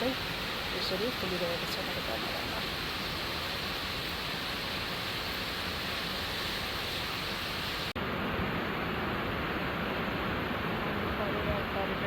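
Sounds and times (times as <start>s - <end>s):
rain falling: 0.0s - 12.0s.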